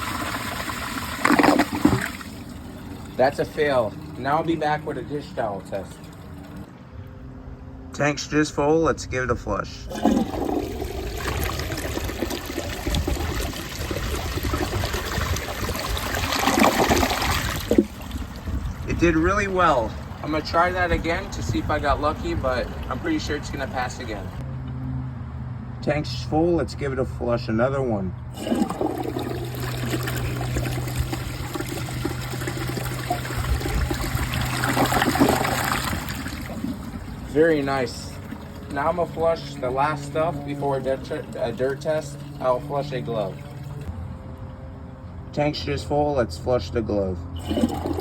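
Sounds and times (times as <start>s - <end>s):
toilet flushing: 0.0s - 6.6s, 9.9s - 18.5s, 28.3s - 43.8s, 47.4s - 48.0s.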